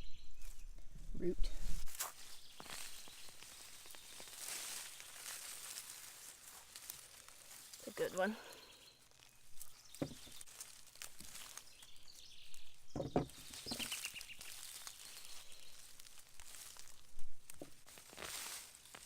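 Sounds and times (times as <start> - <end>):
bird chirp: 0.0 - 0.8, 2.2 - 5.4, 7.8 - 10.5, 11.2 - 16.1
rustling and scraping of soil: 0.0 - 19.0
soft thumps: 9.9 - 10.4, 12.9 - 13.9.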